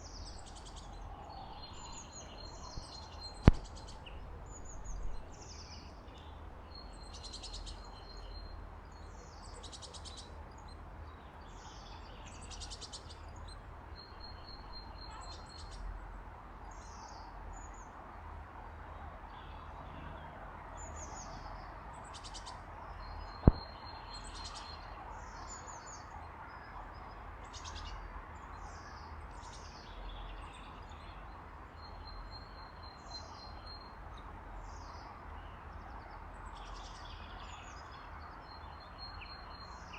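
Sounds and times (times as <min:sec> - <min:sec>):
small songbirds chirping: 0:00.0 - 0:39.9.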